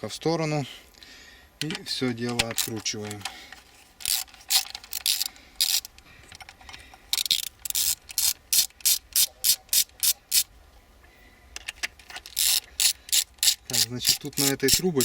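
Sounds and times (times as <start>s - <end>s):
socket ratchet clicking: 1.6s - 3.4s, 4.0s - 10.5s, 11.6s - 15.0s.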